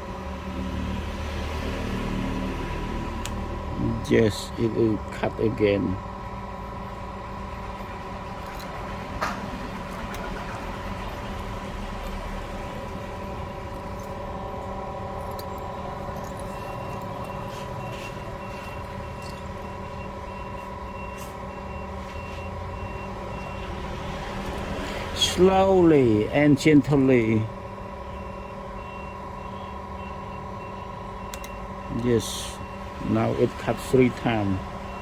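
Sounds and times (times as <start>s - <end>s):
vacuum pump humming: 0.0s - 35.0s
faint high beeping: 13.0s - 23.7s.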